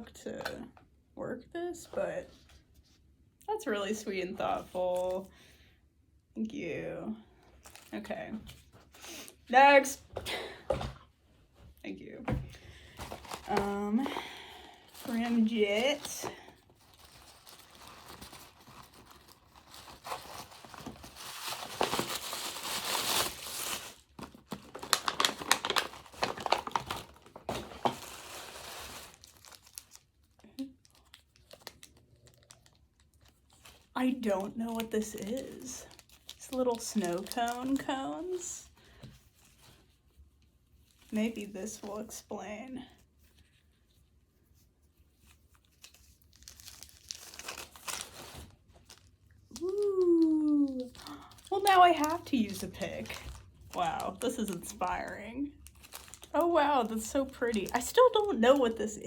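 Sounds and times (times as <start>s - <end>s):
wrapping paper crinkling: 12.8s - 41.8s, 43.2s - 59.0s.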